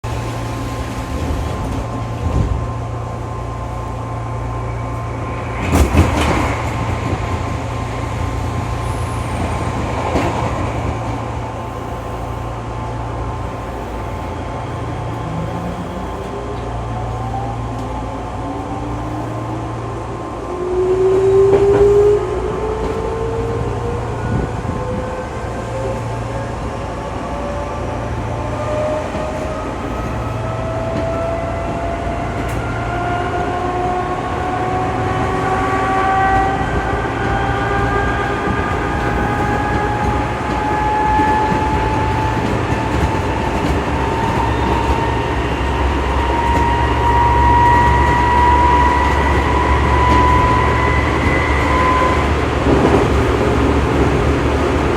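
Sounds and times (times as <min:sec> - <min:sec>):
train running gear rumble: 0:00.0 - 0:54.9.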